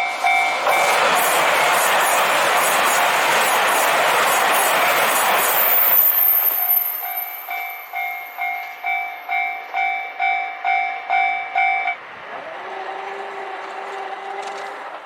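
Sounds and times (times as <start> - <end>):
level-crossing warning bell dinging: 0.0 - 1.6, 4.8 - 15.0.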